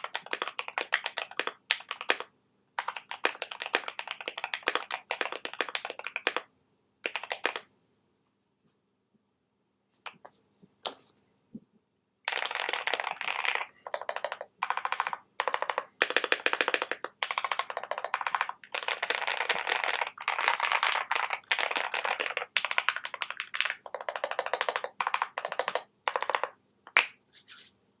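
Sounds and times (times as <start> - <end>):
mechanical keyboard typing: 0.0 - 7.7, 12.3 - 26.6.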